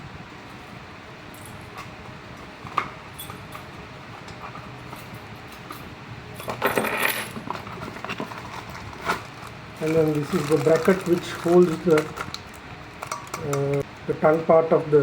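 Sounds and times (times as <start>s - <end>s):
keys and lock parts clinking: 1.3s - 1.9s, 3.1s - 3.7s, 4.9s - 7.4s.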